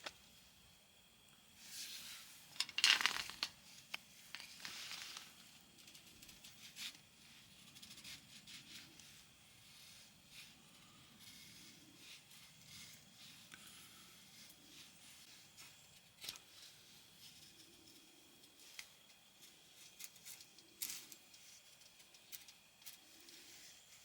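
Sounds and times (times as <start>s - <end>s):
rustling and tearing: 4.3s - 5.3s.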